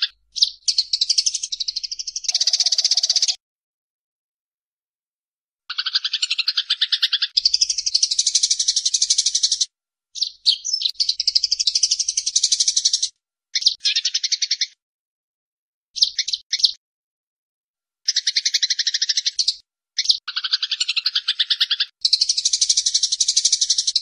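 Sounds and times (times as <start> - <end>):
sparrows chattering: 0.0 - 3.4, 5.7 - 14.8, 16.0 - 16.8, 18.1 - 24.0.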